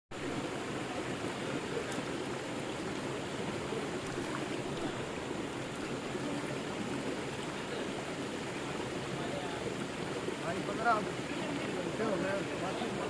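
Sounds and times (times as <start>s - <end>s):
river water rushing: 0.1s - 13.0s
faint water ticks: 1.3s - 3.0s, 3.9s - 6.5s.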